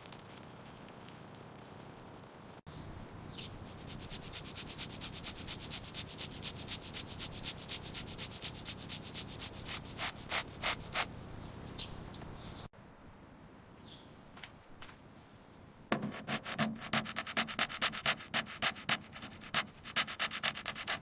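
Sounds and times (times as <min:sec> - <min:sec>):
rubbing strokes on a surface: 0:03.6 - 0:11.1, 0:15.9 - 0:21.0.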